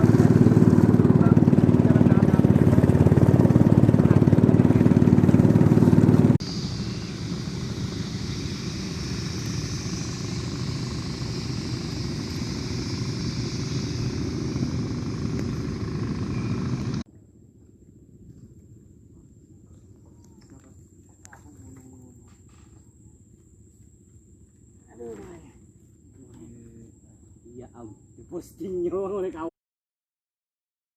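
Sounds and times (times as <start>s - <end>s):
engine running: 0.0s - 17.1s.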